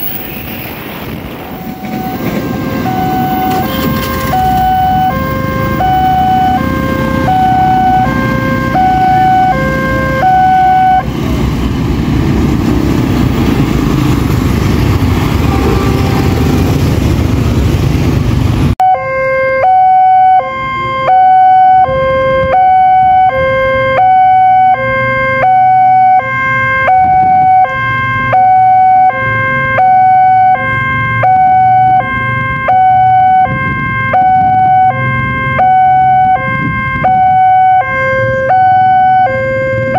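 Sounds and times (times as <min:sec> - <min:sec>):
loud rumbling rush: 0:00.0 - 0:18.8
level crossing two-tone siren: 0:01.4 - 0:11.1, 0:15.4 - 0:16.9, 0:18.8 - 0:39.9.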